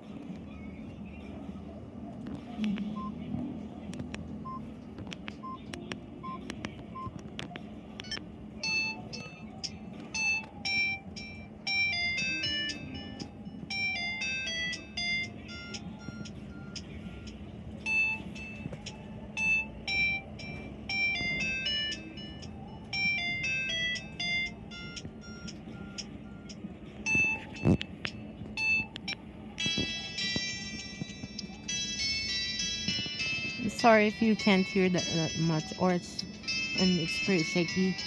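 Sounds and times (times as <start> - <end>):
phone beeping ringtone: 8.0 - 38.0.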